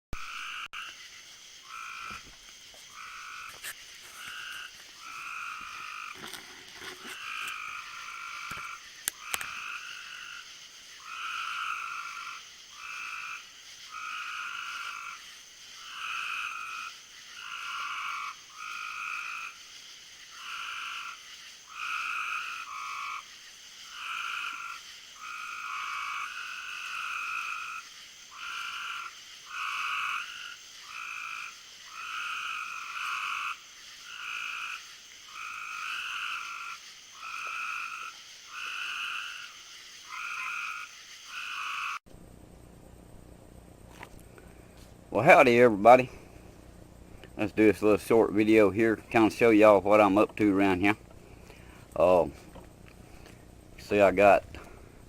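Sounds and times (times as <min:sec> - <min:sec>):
frogs calling: 0:00.2 - 0:42.1, 0:43.9 - 0:55.0
sharp clicks: 0:08.5 - 0:09.6.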